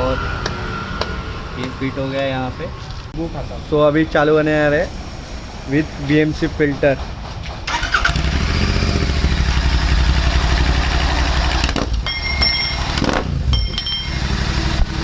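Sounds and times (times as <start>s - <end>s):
motorcycle engine starting and running: 6.7s - 15.0s.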